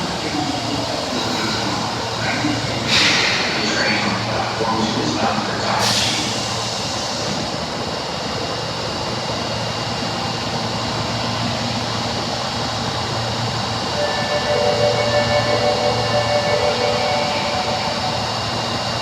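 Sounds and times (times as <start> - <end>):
subway car hum: 0.0 - 19.0
pulsing door chime: 14.0 - 19.0.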